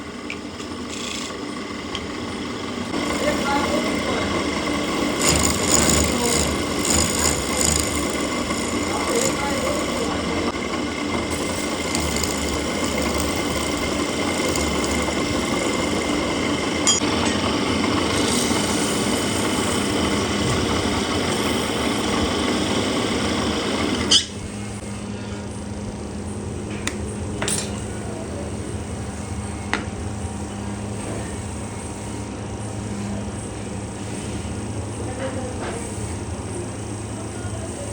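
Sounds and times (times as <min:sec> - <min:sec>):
woodworking power tool running: 0:00.0 - 0:24.1.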